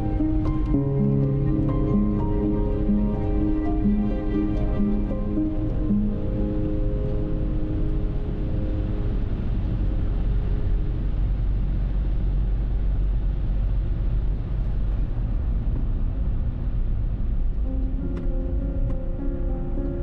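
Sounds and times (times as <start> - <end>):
car road and tyre noise: 5.6 - 19.5.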